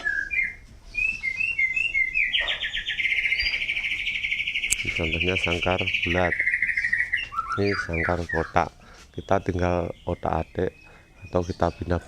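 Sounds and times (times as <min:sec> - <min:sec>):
songbird chirping and trilling: 0:00.0 - 0:12.0.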